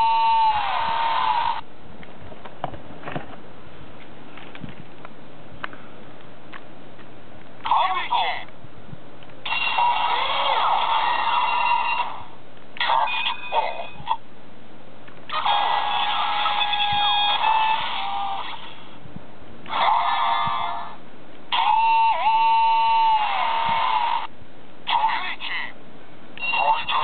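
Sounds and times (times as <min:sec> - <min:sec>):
toy electronic ringing tones: 0:26.4 - 0:27.0.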